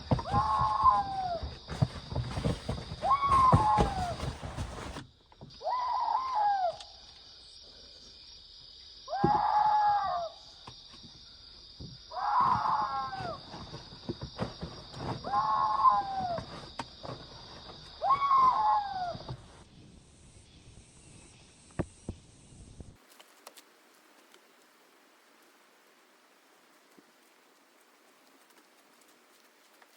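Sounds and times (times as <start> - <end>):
animal call with falling slide: 0.1 - 5.0, 5.6 - 7.0, 9.1 - 10.4, 12.1 - 19.6.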